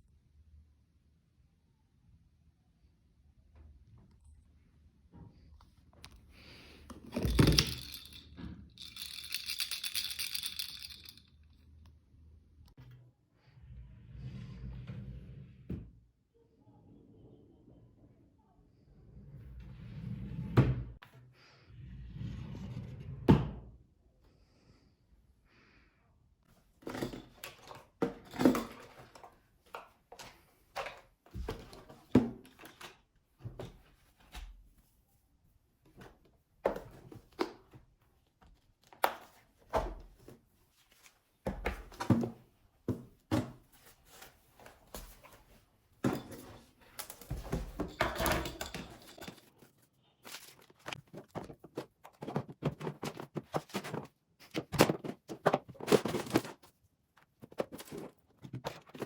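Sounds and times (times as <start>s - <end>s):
objects knocking and thunking: 6.9s - 11.2s, 26.8s - 34.5s, 41.4s - 59.0s.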